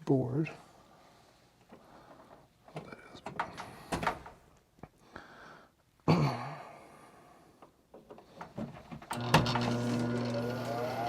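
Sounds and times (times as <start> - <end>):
motor humming: 9.2 - 11.0.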